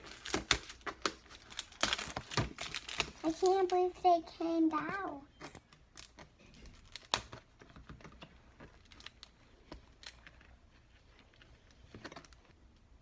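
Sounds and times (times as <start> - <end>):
toy package clicks and crackles: 0.0 - 4.2, 5.4 - 10.6.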